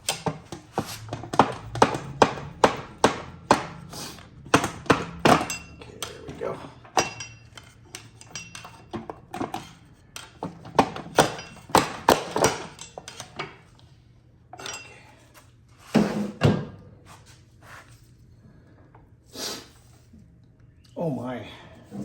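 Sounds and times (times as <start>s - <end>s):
metal clunks and knocks: 0.0s - 13.7s, 16.0s - 16.9s.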